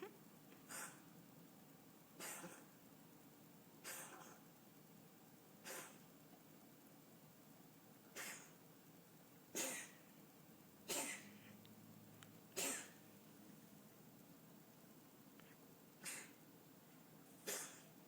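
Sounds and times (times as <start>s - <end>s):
cat coughing: 2.2s - 2.7s, 3.8s - 4.4s, 5.6s - 6.0s, 8.2s - 8.5s, 9.5s - 10.0s, 10.8s - 11.4s, 12.6s - 13.0s, 16.0s - 16.4s, 17.4s - 17.8s.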